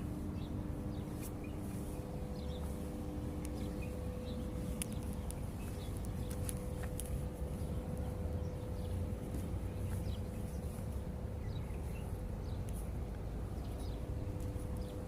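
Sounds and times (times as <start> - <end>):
constant hum: 0.0 - 15.0
low rumble: 0.0 - 15.0.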